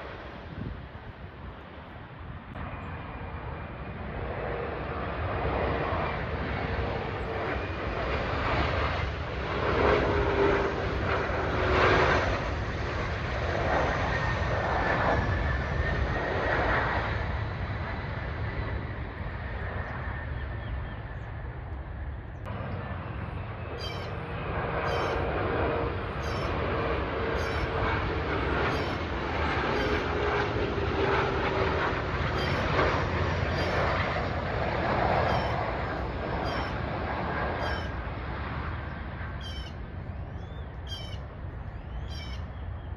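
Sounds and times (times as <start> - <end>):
jet engines whining: 0.0 - 42.9
faint bird chirps: 23.8 - 24.2, 24.9 - 25.3, 26.2 - 26.6, 35.2 - 35.6, 36.4 - 36.8, 39.4 - 42.9.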